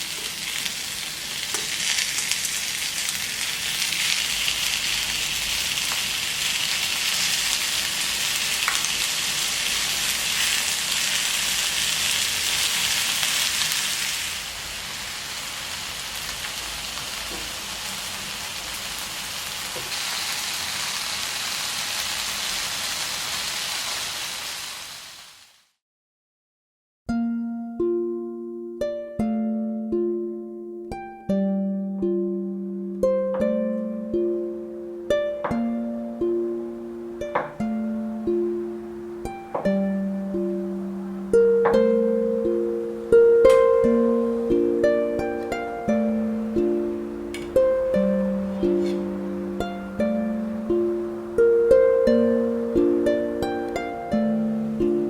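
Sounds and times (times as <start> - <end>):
food sizzling in a hot pan: 0.0 - 25.8, 46.0 - 52.3.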